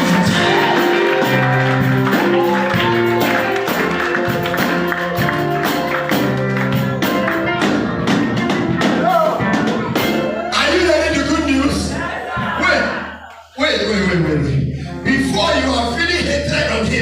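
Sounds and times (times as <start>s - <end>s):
upbeat music with tambourine beat: 0.0s - 10.3s
person's voice: 10.6s - 17.0s.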